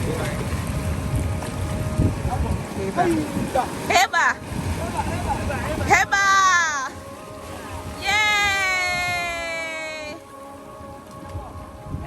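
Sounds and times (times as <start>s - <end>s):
person cheering yay: 8.0s - 10.2s.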